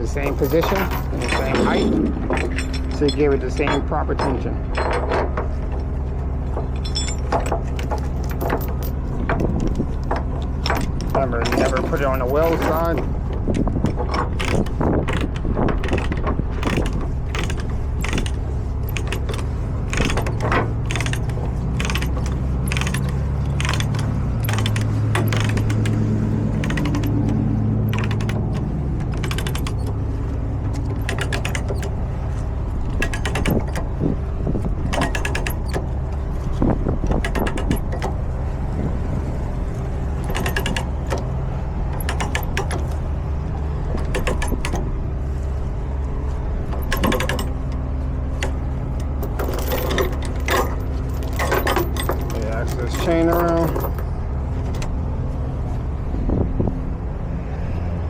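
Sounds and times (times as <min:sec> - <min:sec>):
chain links clinking: 0:00.0 - 0:43.0, 0:46.2 - 0:54.9
low engine hum: 0:00.0 - 0:58.0
ratchet binder clicking: 0:06.6 - 0:38.4, 0:39.9 - 0:43.3, 0:43.9 - 0:45.5, 0:46.7 - 0:54.1.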